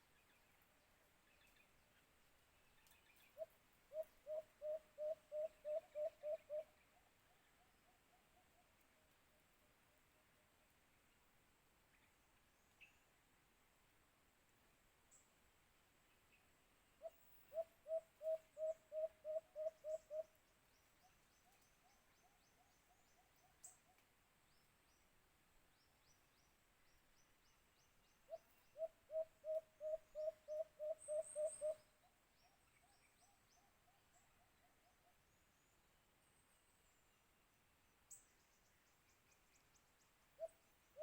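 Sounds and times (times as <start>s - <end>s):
dove hooting: 3.4s - 6.7s, 17.0s - 20.3s, 28.3s - 31.8s.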